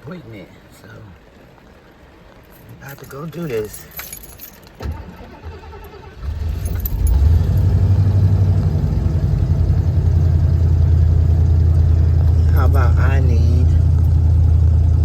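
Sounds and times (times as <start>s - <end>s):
keys jangling: 3.0s - 4.8s, 6.6s - 7.3s
van engine starting and idling: 4.8s - 15.0s.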